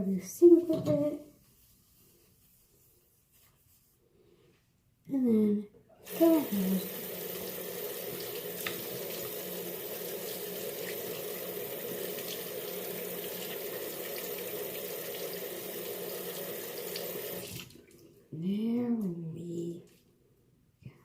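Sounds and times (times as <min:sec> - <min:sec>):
sink tap running into basin: 0:06.1 - 0:17.7.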